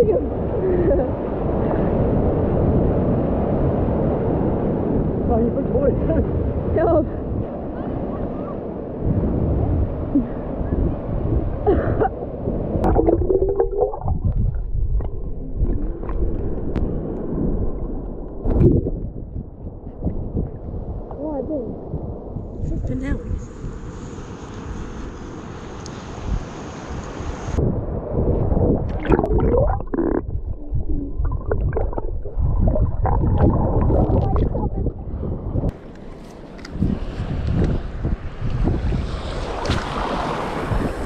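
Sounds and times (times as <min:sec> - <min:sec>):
muffled water gurgling: 0:08.9 - 0:20.6, 0:28.4 - 0:35.8.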